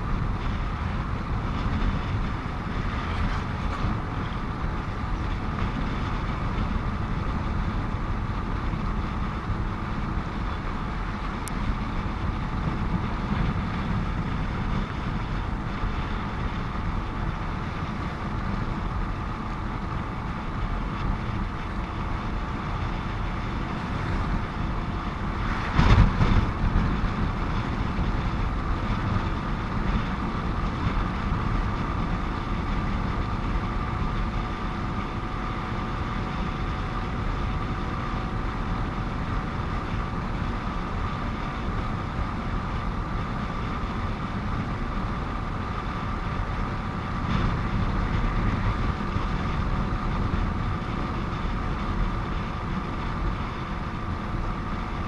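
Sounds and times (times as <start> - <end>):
constant whine: 0.0 - 55.0
motorcycle engine and road noise: 0.0 - 55.0.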